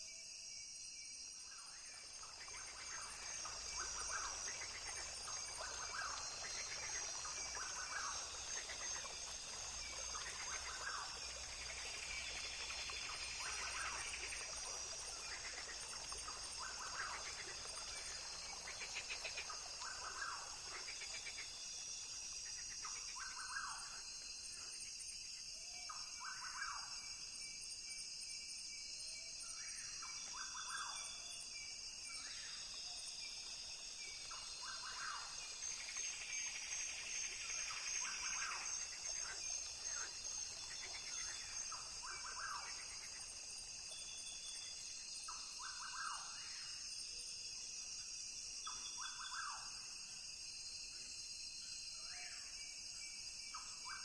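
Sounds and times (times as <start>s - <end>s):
insects droning: 0.0s - 54.0s.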